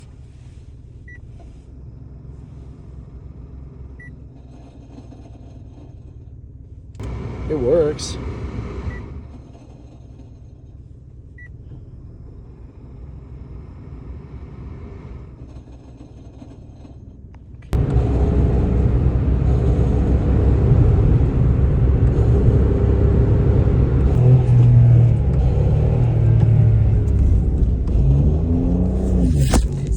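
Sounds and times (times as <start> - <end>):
air conditioning grinding rumble: 0.0 - 29.9
car engine idling: 0.0 - 29.9.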